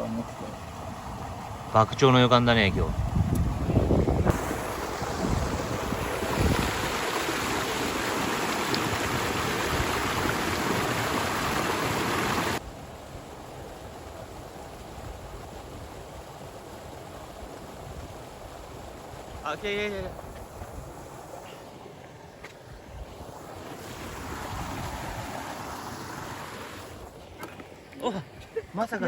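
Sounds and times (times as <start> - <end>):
fast-flowing river water: 3.0 - 12.6, 23.2 - 28.0.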